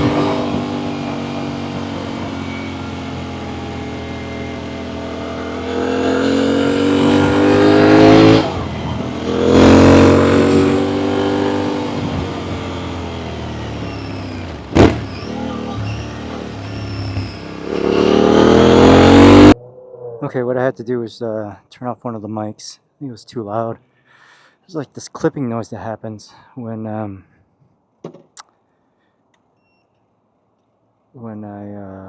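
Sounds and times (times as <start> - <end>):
motorcycle engine accelerating: 0.0 - 20.5.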